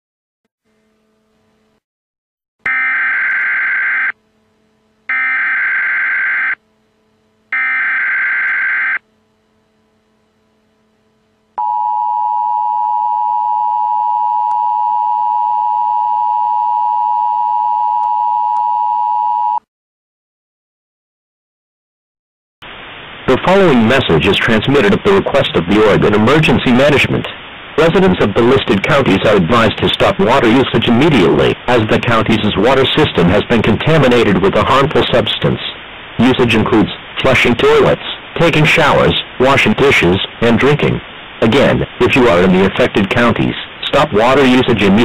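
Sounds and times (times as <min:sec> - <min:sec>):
buzzy digital data tones: 0:02.7 - 0:10.7
two-tone attention signal: 0:05.1 - 0:06.6, 0:07.5 - 0:09.0.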